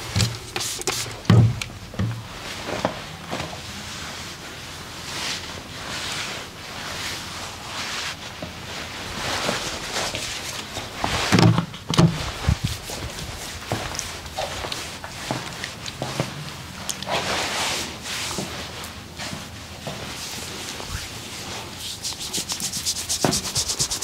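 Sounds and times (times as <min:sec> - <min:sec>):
hands rubbing skin: 0:20.8 - 0:24.0
heavier pats on skin: 0:20.8 - 0:24.0.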